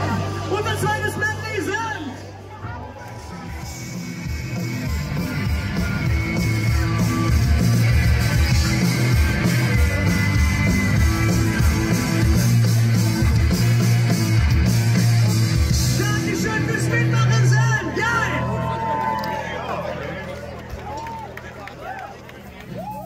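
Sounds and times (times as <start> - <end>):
live rock band playing: 3.5 - 18.2.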